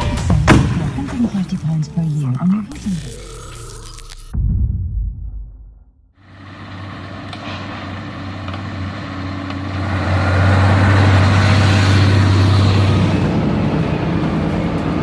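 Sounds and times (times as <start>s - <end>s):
truck engine under load: 6.3s - 15.0s.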